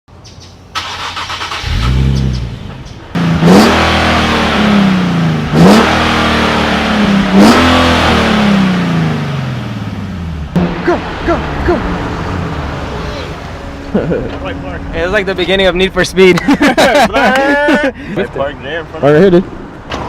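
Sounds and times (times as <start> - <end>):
car engine revving: 0.8 - 15.4.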